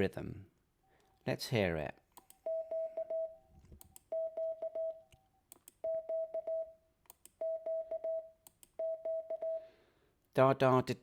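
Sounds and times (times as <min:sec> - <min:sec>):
morse code beeps: 0:02.4 - 0:05.1, 0:05.8 - 0:06.8, 0:07.4 - 0:09.7.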